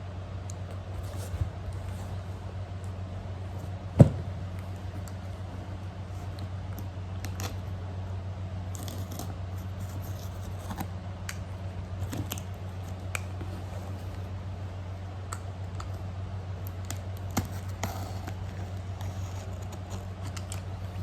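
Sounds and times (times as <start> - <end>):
steady low hum: 0.0 - 21.0
thump: 4.0 - 4.3.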